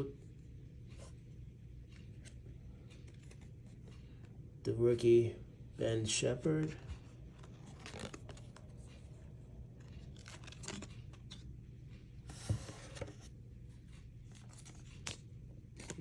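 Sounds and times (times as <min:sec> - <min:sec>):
cards sliding and scraping: 0:06.8 - 0:09.2, 0:12.2 - 0:13.4.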